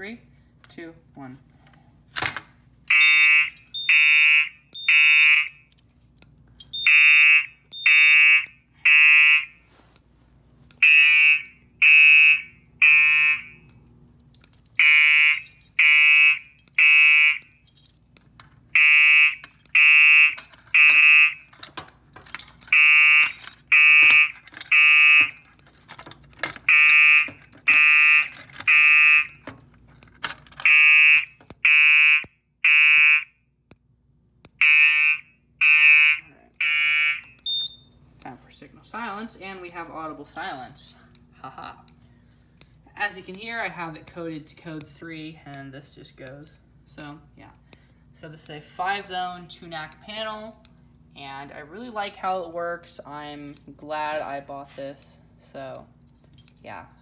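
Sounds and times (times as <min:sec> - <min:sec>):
fire alarm horn blasts: 0:02.9 - 0:05.8, 0:06.7 - 0:09.7, 0:10.8 - 0:13.7, 0:14.8 - 0:17.6, 0:18.8 - 0:21.5, 0:22.7 - 0:25.5, 0:26.6 - 0:29.5, 0:30.6 - 0:33.5, 0:34.6 - 0:38.0.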